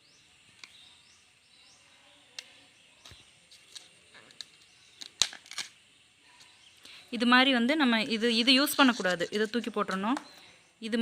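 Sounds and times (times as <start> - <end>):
bamboo sheaths peeled crackling: 2.4 - 5.8.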